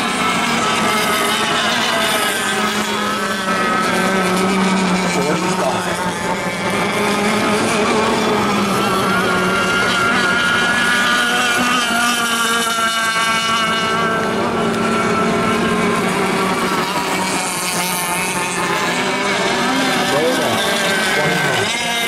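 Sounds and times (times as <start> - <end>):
outboard engine at high revs: 0.0 - 22.0.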